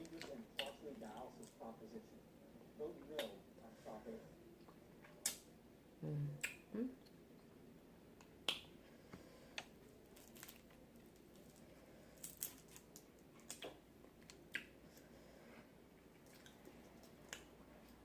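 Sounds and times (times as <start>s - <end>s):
wet mouth clicks and smacks: 6.4s - 6.7s, 13.5s - 13.8s, 14.4s - 14.7s.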